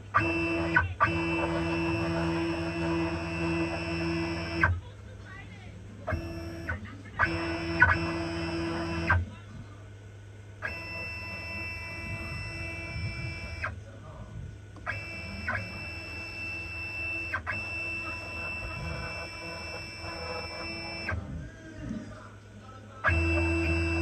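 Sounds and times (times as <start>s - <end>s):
stepper motors whining: 0.0s - 4.8s, 6.1s - 9.3s, 10.6s - 13.8s, 14.8s - 21.9s, 23.0s - 24.0s
steady low hum: 0.0s - 24.0s.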